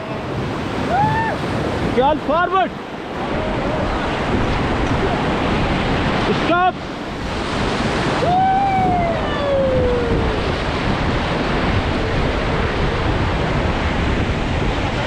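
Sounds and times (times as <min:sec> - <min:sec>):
rushing river water: 0:00.0 - 0:15.0
wind on microphone: 0:00.0 - 0:15.0.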